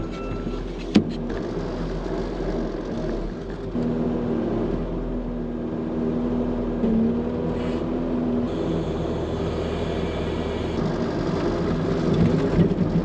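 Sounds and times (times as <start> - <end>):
farm vehicle engine running: 0.0 - 13.0
high steady whine: 8.5 - 10.9.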